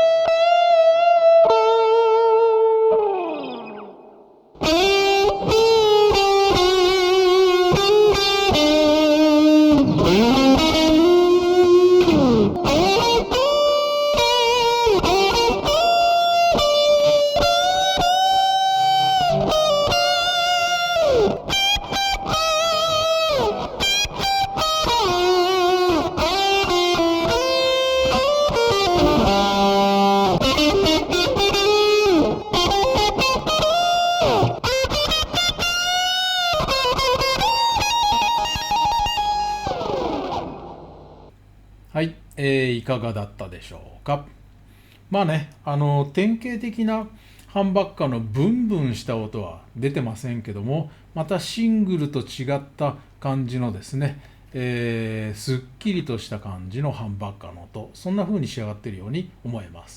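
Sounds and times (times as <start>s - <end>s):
electric guitar lead line: 0.0s - 41.3s.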